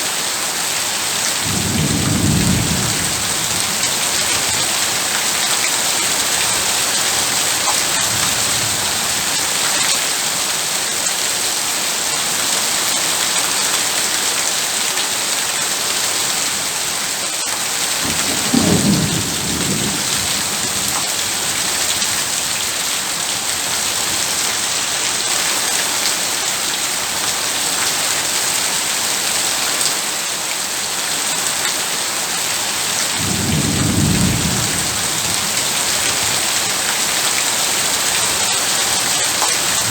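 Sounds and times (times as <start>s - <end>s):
heavy rain pouring: 0.0s - 39.9s
low thunder rumble: 1.4s - 4.8s, 18.0s - 22.6s, 33.2s - 36.4s.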